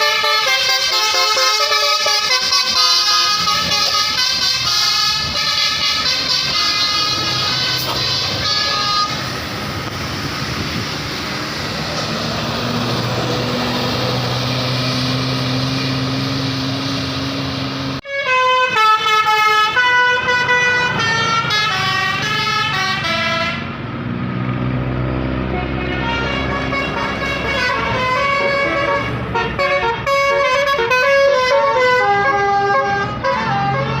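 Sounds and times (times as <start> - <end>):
musical air horns playing melodies: 0.0 - 9.5, 18.0 - 23.8, 25.5 - 34.0
bus engine low drone: 0.0 - 34.0
traffic noise: 0.0 - 34.0.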